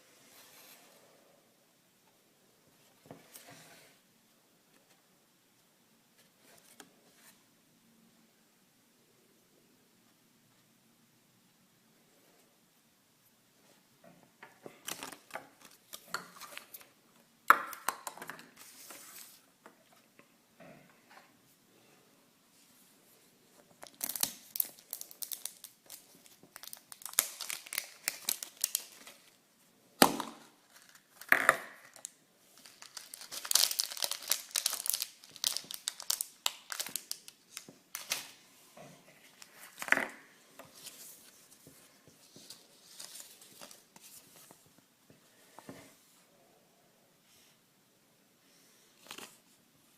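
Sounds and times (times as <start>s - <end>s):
packaging crinkling and tearing: 23.8s - 29.4s, 30.6s - 38.4s.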